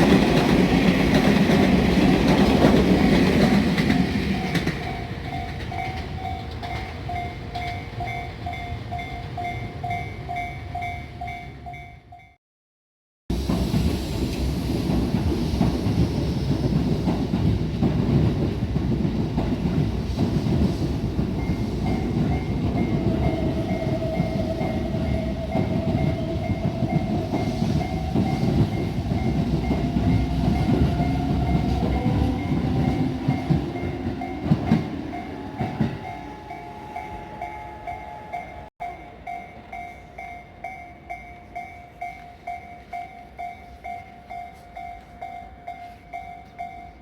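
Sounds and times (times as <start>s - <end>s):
train wheels clattering over rails: 0.0s - 7.8s, 13.3s - 36.4s
two-tone crossing warning bell: 0.0s - 12.4s, 21.2s - 47.0s.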